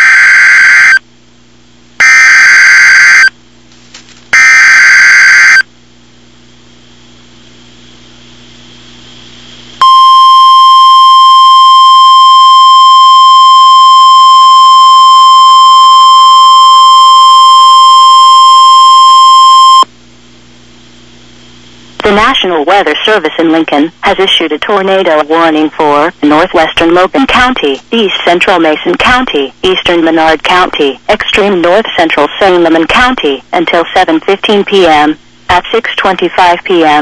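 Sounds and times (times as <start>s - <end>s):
low hum: 5.7s - 22.2s
steady high-pitched alarm tone: 9.8s - 19.8s.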